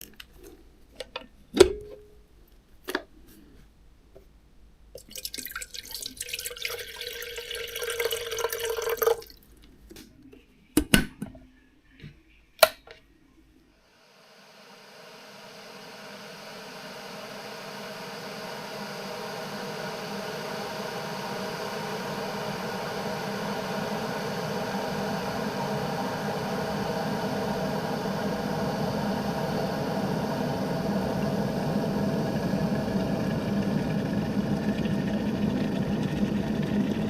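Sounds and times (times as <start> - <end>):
kettle heating hiss: 5.0 - 9.3, 13.8 - 37.0
water pouring into kettle: 5.0 - 9.4, 18.6 - 37.0.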